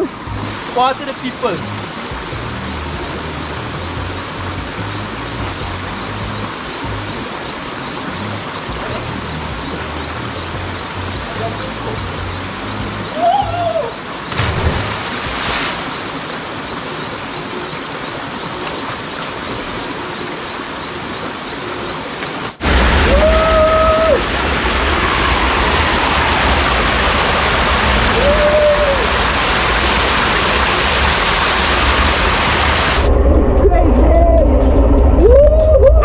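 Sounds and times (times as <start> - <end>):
waterfall and stream rushing: 0.0 - 33.2
low rumble: 22.6 - 36.0.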